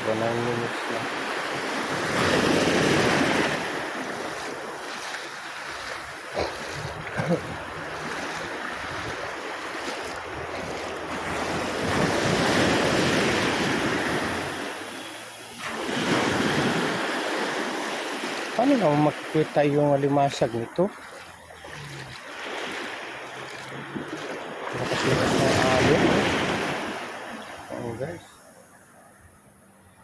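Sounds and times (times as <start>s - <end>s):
sea waves washing: 0.0s - 29.1s.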